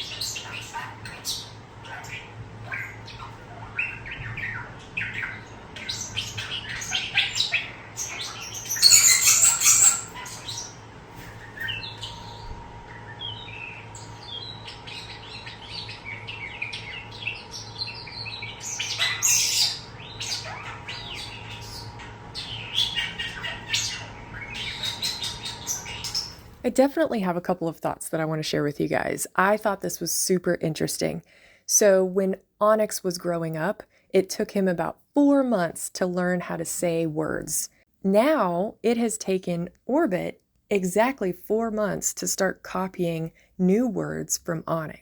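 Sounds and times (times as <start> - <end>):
loud harsh bird squawk: 0.0 - 10.8, 16.6 - 26.4
starling chattering: 0.0 - 10.8.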